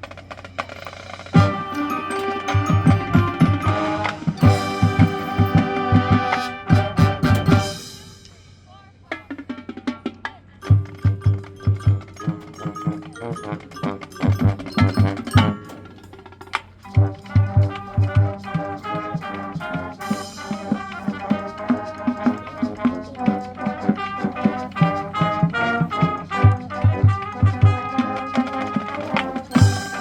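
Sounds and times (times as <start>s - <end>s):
marching band brass chords: 0.1s - 9.1s, 10.6s - 30.0s
cymbal crash: 1.4s - 8.7s.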